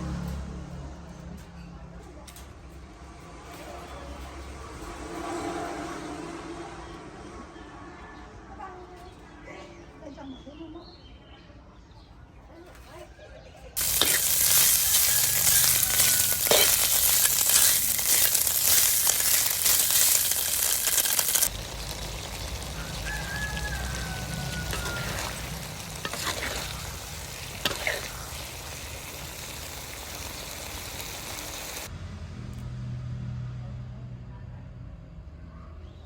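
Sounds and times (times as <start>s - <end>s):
food sizzling in hot oil: 13.8s - 31.9s.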